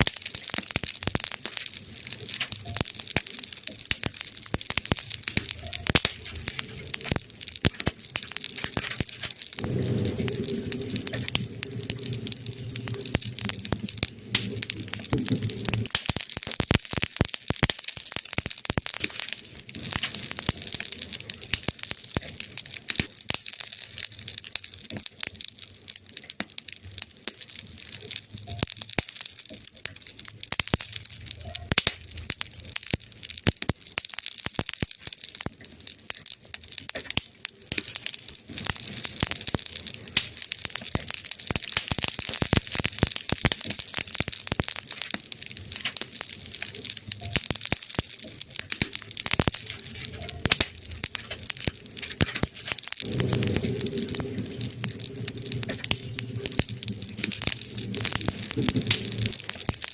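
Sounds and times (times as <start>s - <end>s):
campfire crackling and popping: 0.0s - 59.9s
steady fire hiss: 0.0s - 59.9s.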